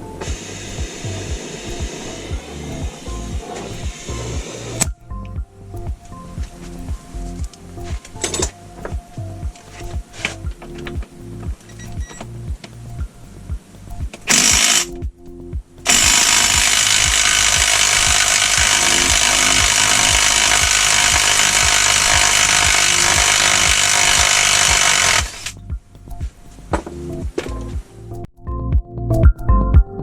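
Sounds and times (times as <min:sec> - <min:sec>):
background music with steady beat: 0:00.0 - 0:30.0
compressed-air tool hissing: 0:15.9 - 0:25.6.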